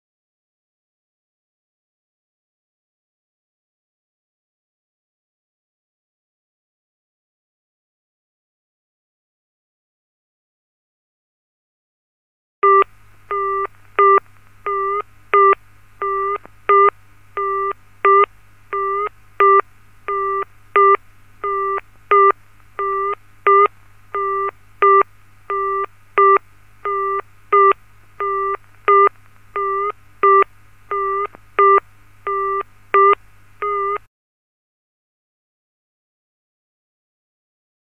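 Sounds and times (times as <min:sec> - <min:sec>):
faint low hum: 0:12.6 - 0:34.0
telephone busy signal beeps: 0:12.6 - 0:34.0.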